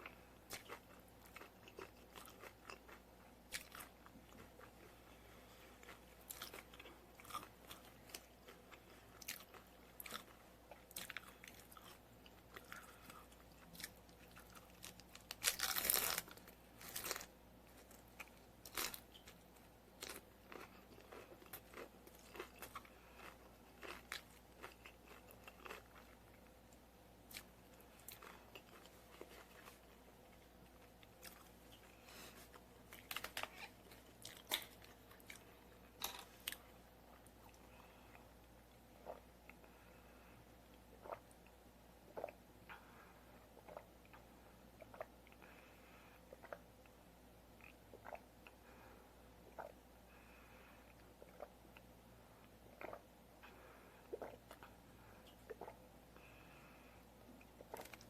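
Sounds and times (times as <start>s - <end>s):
crunchy chewing: 0.0s - 4.8s, 5.8s - 19.4s, 20.0s - 26.4s.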